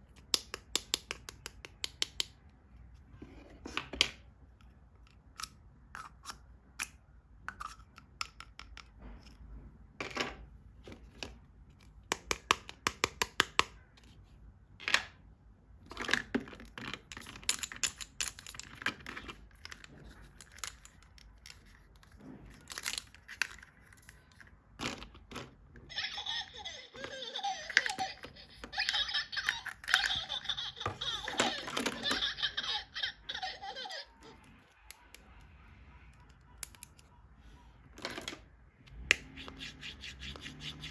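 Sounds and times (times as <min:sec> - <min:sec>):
plastic toys and packaging clicking: 0:00.0 - 0:25.9, 0:27.0 - 0:37.2, 0:37.9 - 0:40.9
toy playing recorded giggling: 0:25.9 - 0:34.6.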